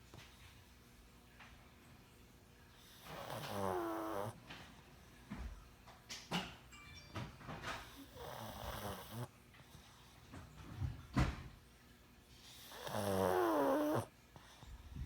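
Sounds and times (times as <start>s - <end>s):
dog snoring: 2.8s - 4.7s, 7.8s - 10.1s, 12.4s - 14.9s
dog snorting: 2.9s - 4.4s, 7.9s - 9.3s, 12.5s - 14.1s.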